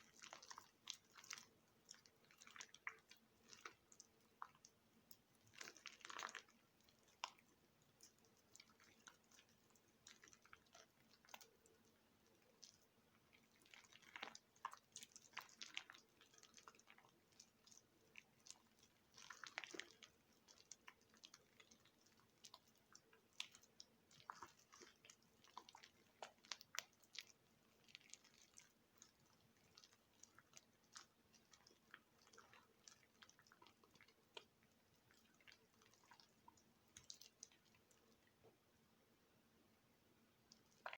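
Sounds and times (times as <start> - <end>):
wet soap crackling: 0.0 - 38.8, 40.2 - 40.9
crunchy soap clusters: 12.5 - 38.1.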